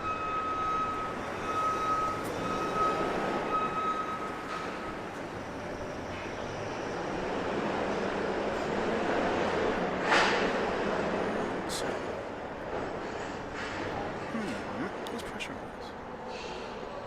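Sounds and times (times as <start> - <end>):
backup alarm beeping: 0.0 - 5.0
city traffic hum: 0.0 - 17.0.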